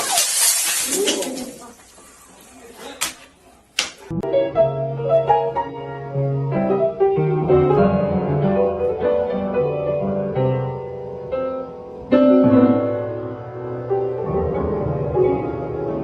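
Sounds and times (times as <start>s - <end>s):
piano music: 4.1s - 16.0s.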